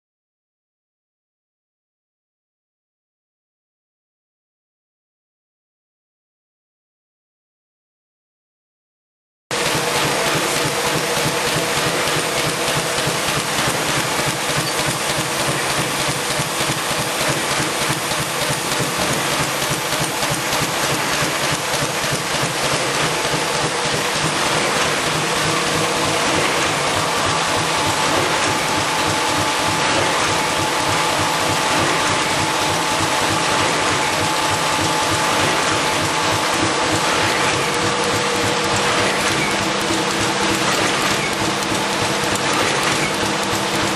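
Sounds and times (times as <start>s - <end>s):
machinery rattling: 9.5s - 43.9s.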